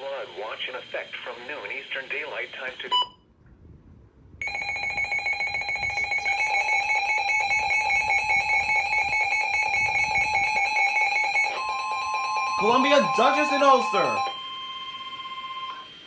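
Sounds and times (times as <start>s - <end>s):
two-tone electronic alarm: 4.4s - 16.0s.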